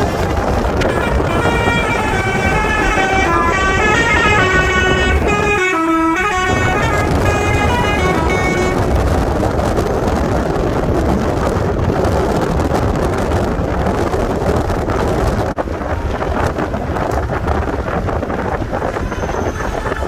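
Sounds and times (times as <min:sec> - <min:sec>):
bus musical horn: 0:00.0 - 0:09.4
vehicle rumble: 0:00.0 - 0:20.0
wind buffeting microphone: 0:00.0 - 0:20.0.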